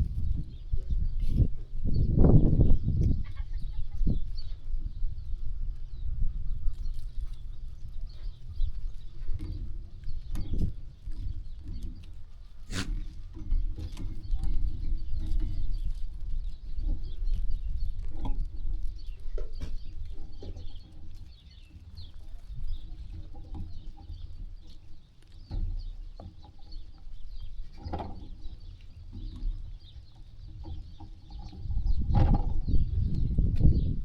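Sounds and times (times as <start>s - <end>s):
birds chirping: 0.2s - 34.0s
farm animal calls: 3.0s - 4.7s, 11.6s - 14.7s.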